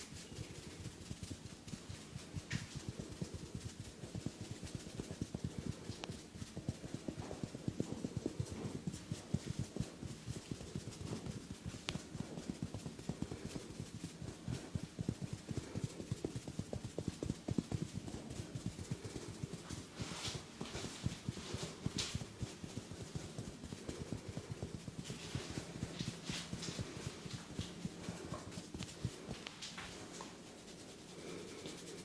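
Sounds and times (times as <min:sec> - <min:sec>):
rapid hand strikes of massage: 0:00.0 - 0:32.0.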